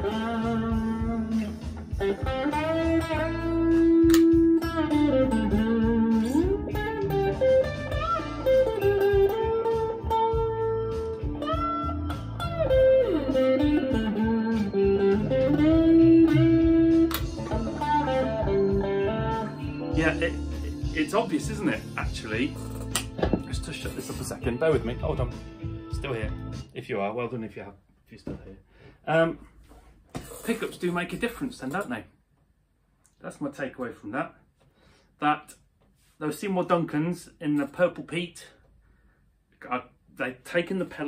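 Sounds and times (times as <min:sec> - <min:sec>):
overdriven electric guitar lead: 0:00.0 - 0:21.9
backing track: 0:00.0 - 0:26.8.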